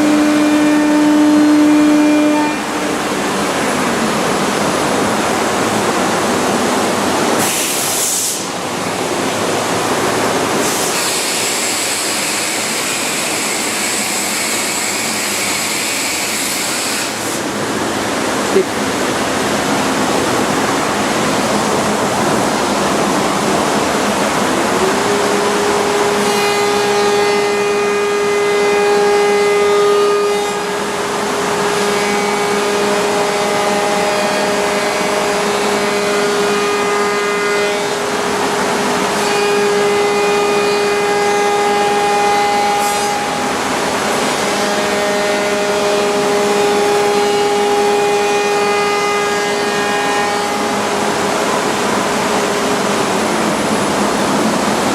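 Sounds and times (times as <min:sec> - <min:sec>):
shrill wood cutting sound: 0:10.7 - 0:17.4, 0:24.6 - 0:30.7, 0:38.9 - 0:52.6.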